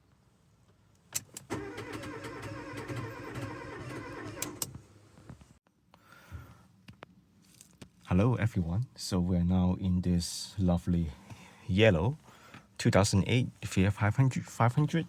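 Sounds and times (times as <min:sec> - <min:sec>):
car engine cranking: 0:01.2 - 0:04.8.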